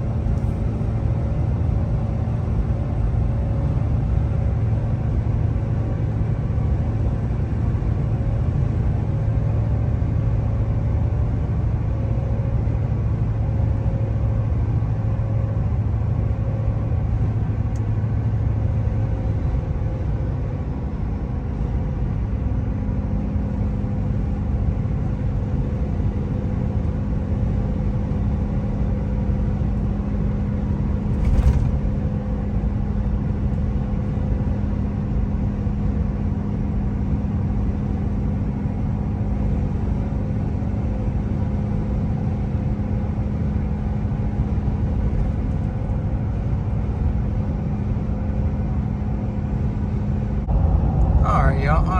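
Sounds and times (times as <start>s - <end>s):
exhaust rumble: 0.0s - 51.9s
short thump: 31.0s - 32.2s.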